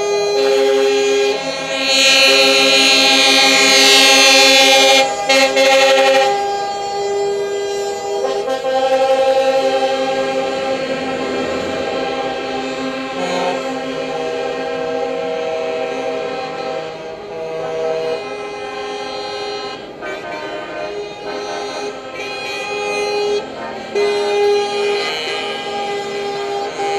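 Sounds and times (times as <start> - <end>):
truck air horns chords: 0.0 - 26.9.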